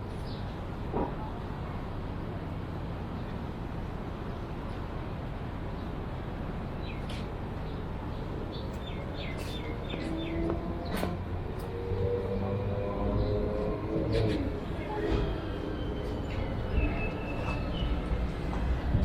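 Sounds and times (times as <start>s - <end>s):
railway station rumble: 0.0s - 19.0s
bird chirping: 15.8s - 18.3s.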